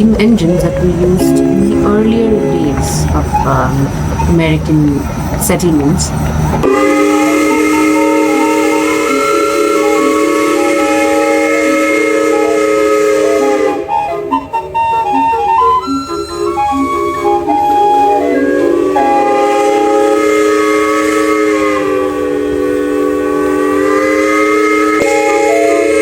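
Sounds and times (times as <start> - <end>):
steam whistle chord: 0.6 - 3.9, 6.6 - 26.0
short steam whistle notes: 6.6 - 26.0.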